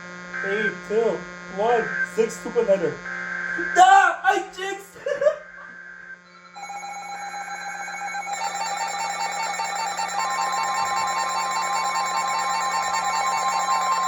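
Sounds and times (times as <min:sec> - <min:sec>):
higher electronic tone: 0:06.2 - 0:14.0
electronic alert tone: 0:06.3 - 0:14.0.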